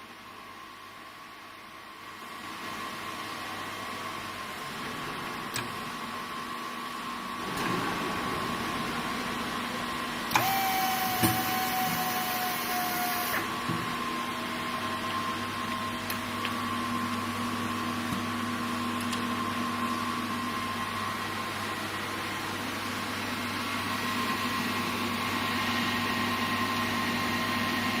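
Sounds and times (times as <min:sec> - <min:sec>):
motor whine: 0:10.3 - 0:15.0.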